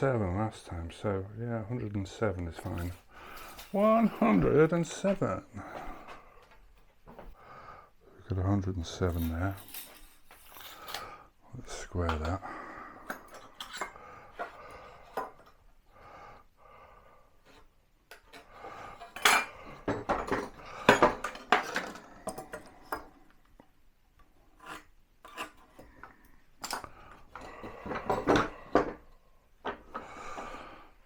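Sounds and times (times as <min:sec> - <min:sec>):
hand tools clinking on workbench: 0:09.0 - 0:11.1, 0:18.1 - 0:23.1.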